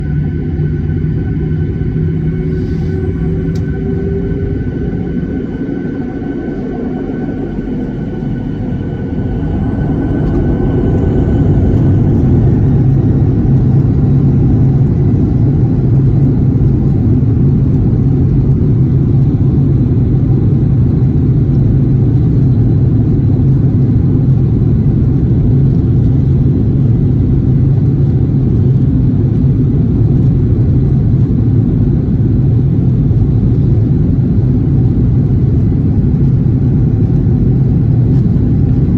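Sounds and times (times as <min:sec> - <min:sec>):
faint high whining tones: 0:00.0 - 0:16.0
aircraft engines rumbling: 0:00.0 - 0:38.9.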